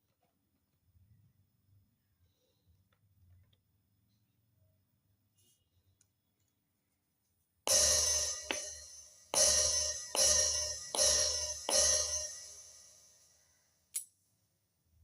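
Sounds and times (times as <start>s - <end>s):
electronic cymbal hits: 7.7s - 13.2s.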